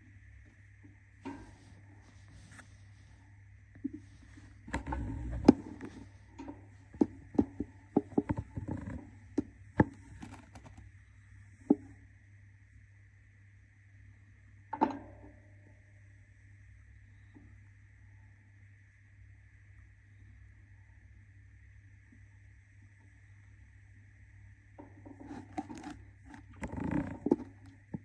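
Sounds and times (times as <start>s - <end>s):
steady electrical hum: 0.0s - 28.0s
budgie scratching and shuffling: 1.3s - 3.3s, 4.0s - 10.9s, 25.2s - 27.7s.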